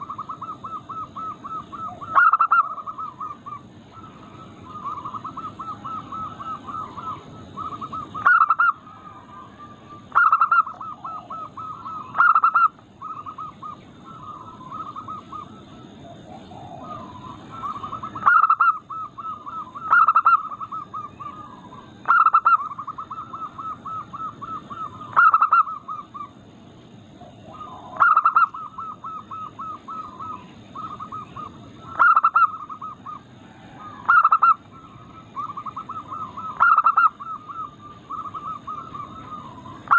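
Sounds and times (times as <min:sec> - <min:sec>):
dove rapid staccato coos: 0:00.0 - 0:39.9.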